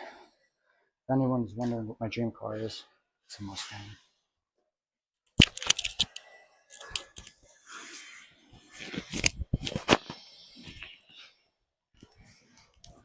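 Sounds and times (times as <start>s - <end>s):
sharp clicks and crackling rustles: 5.3s - 7.6s.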